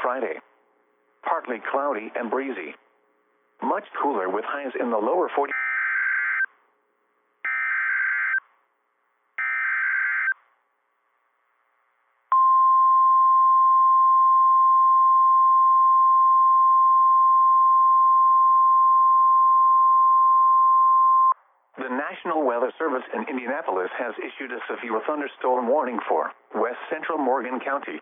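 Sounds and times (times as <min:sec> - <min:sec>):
steady warning alarm tone: 0:05.4 - 0:06.5, 0:07.5 - 0:08.4, 0:09.4 - 0:10.4.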